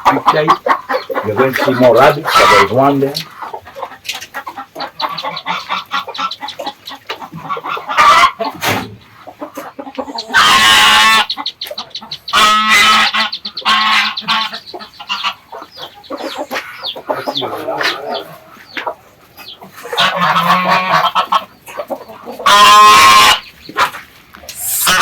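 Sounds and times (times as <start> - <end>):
poultry calling loudly: 0.0 - 25.0.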